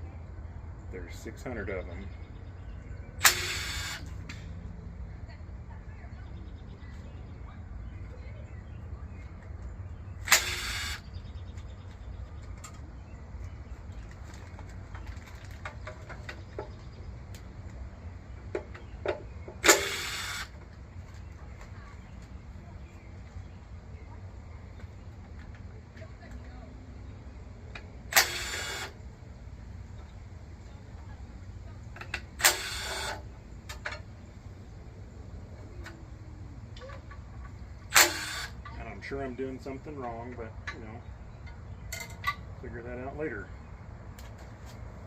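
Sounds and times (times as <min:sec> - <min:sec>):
steady low hum: 0:00.0 - 0:45.0
power driver spinning bolt: 0:03.2 - 0:04.1, 0:10.2 - 0:11.0, 0:19.6 - 0:20.6, 0:28.1 - 0:29.0.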